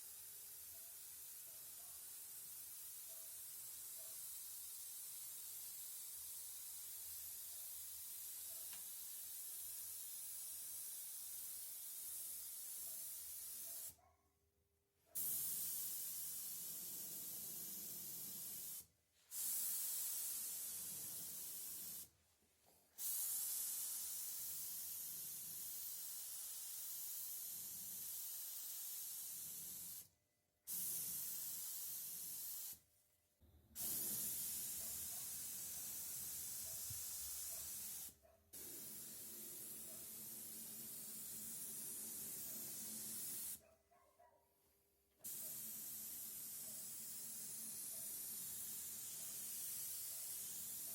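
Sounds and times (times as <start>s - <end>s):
compressed-air spray gun hissing: 33.8s - 43.6s.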